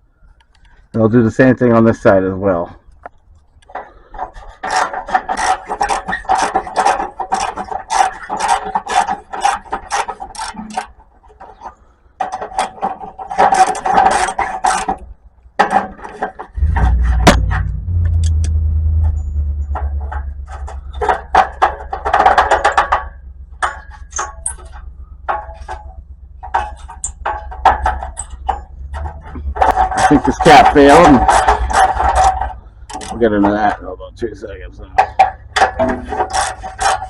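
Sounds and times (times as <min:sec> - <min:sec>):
low steady hum: 0:16.6 - 0:37.0.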